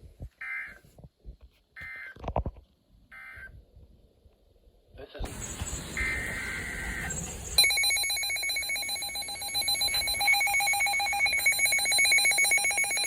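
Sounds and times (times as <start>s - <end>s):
pulsing electronic alarm tone: 5.3s - 13.0s.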